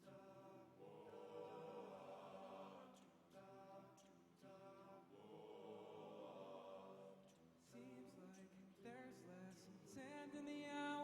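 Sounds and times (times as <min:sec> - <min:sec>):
vocal group singing in harmony: 0:00.0 - 0:11.0.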